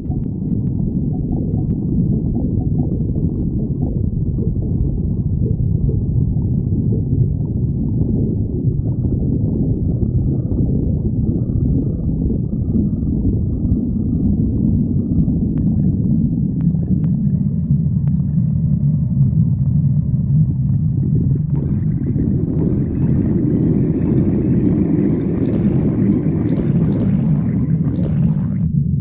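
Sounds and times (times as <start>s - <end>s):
stomach growling: 0.0s - 29.0s.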